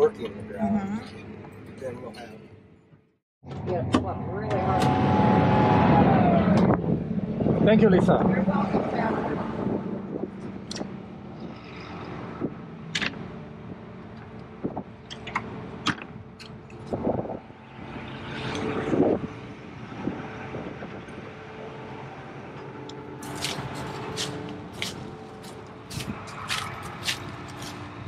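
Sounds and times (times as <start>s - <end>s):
farm machine engine running: 23.1s - 28.0s.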